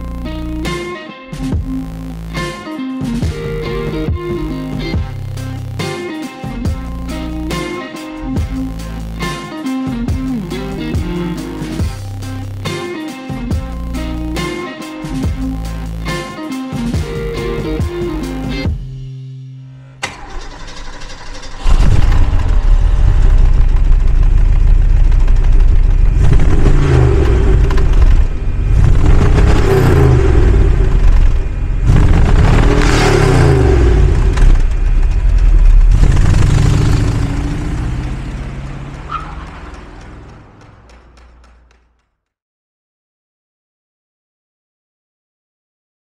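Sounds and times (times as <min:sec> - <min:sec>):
car engine starting: 0:19.8 - 0:41.8
car engine revving: 0:20.0 - 0:41.7.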